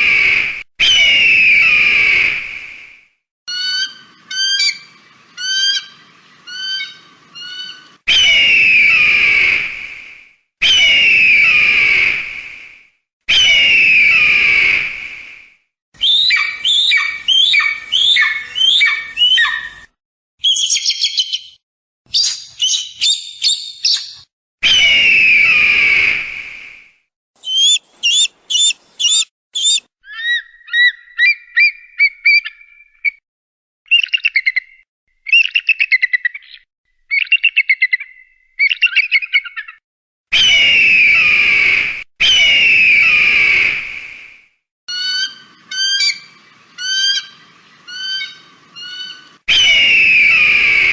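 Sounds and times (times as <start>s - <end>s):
eagle harsh screams: 13.3s - 14.9s, 27.4s - 29.8s
eagle chattering calls: 27.4s - 31.3s.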